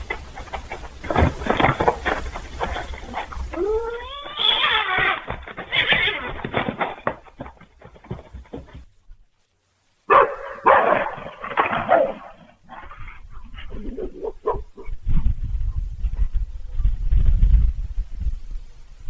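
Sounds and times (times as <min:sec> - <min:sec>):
dog yelping: 0:03.0 - 0:06.7, 0:10.1 - 0:13.2
dog barking: 0:10.1 - 0:12.5, 0:14.2 - 0:14.9.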